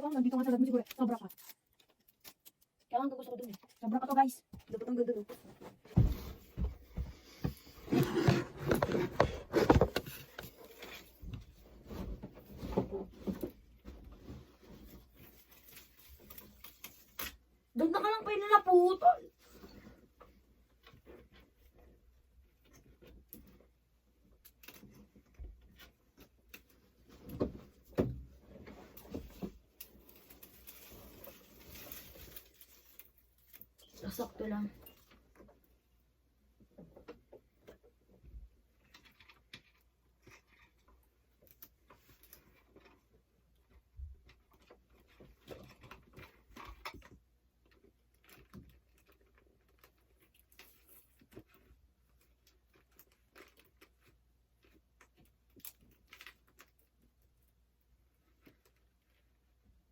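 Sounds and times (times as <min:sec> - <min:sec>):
objects being handled: 0:00.0 - 0:17.6, 0:19.2 - 0:59.8.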